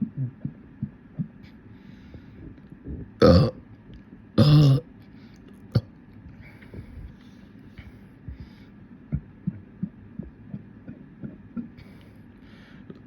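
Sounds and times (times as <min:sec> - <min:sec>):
low grunting: 0:03.2 - 0:03.6, 0:04.4 - 0:04.8
person burping: 0:03.2 - 0:03.6, 0:04.4 - 0:04.8
throat clicks: 0:08.3 - 0:12.1.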